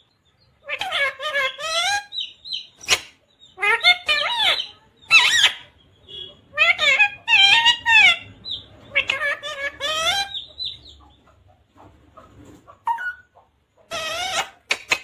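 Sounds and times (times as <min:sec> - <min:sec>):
parrot squawking calls: 0:00.6 - 0:10.9, 0:13.9 - 0:15.0
parrot soft chirps: 0:00.6 - 0:11.2.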